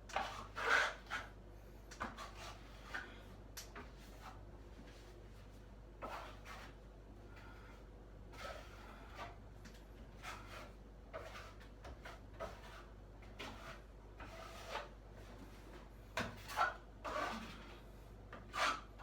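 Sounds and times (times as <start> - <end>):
filling knife scraping ceiling: 10.2 - 14.9, 16.3 - 17.8.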